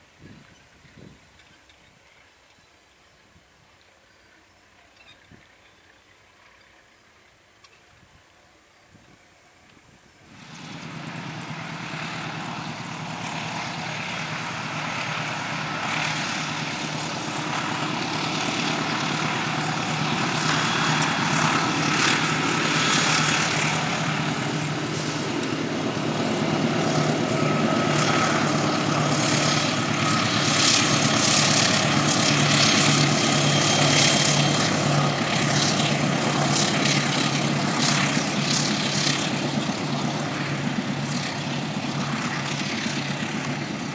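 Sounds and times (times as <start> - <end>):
locomotive engine droning: 8.5 - 43.9.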